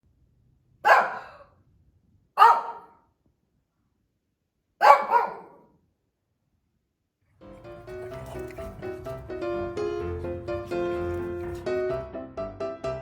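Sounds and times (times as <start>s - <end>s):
small dog barking: 0.8s - 1.6s, 2.4s - 3.1s, 4.8s - 5.8s.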